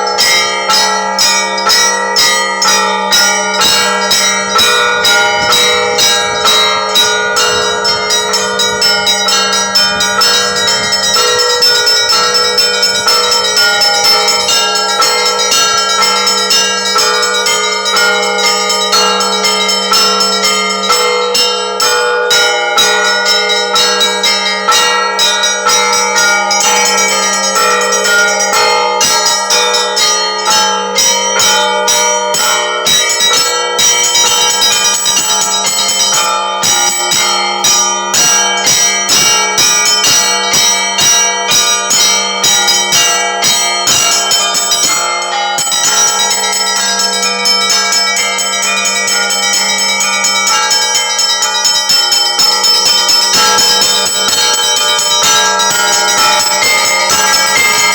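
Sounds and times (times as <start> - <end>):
low bell humming: 0.0 - 21.2, 36.9 - 57.9
small high bells ringing rapidly: 0.0 - 57.9.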